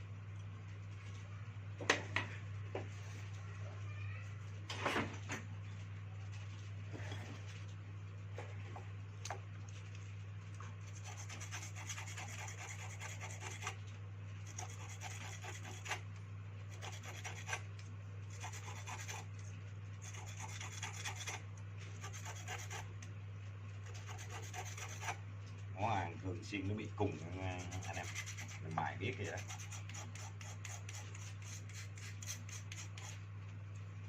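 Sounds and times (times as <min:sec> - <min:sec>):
low electrical hum: 0:00.0 - 0:34.0.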